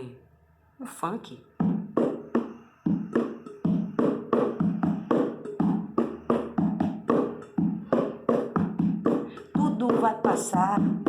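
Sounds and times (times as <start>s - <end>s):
percussion on kitchen pots: 1.5s - 11.0s.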